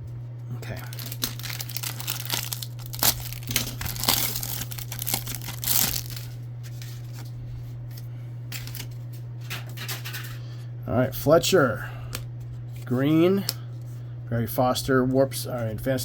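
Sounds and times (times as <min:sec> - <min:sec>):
foil wrapper tearing and crinkling: 0:00.8 - 0:07.3
cards rustling: 0:00.8 - 0:09.1.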